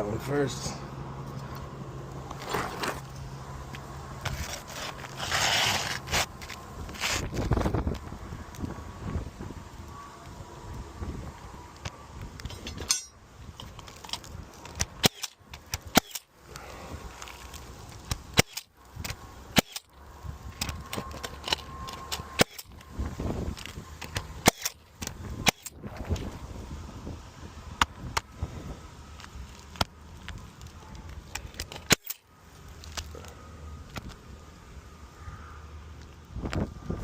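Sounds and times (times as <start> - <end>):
shuffling and handling noise: 2.2 - 8.0
nail gun firing: 15.0 - 16.3, 19.6 - 19.9.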